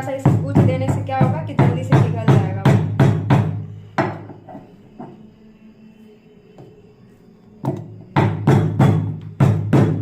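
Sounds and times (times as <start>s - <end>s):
jaggery being pounded: 0.0s - 5.2s, 7.6s - 10.0s.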